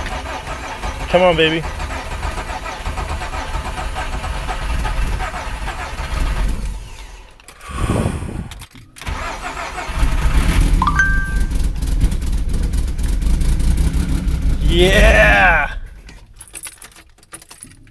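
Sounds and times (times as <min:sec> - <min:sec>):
car engine starting and running: 0:00.0 - 0:17.1.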